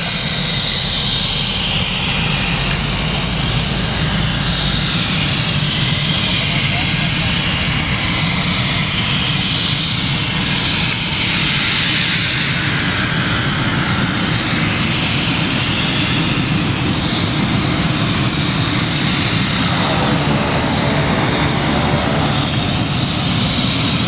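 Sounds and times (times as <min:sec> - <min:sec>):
turboprop engine running: 0:00.0 - 0:24.0.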